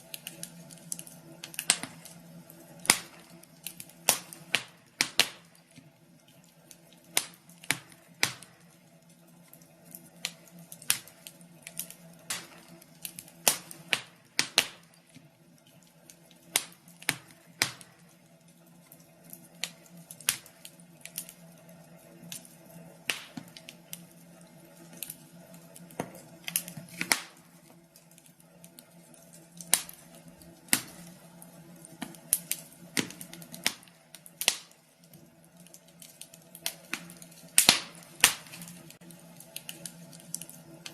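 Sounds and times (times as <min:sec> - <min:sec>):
wood fire crackling: 0:00.0 - 0:40.9.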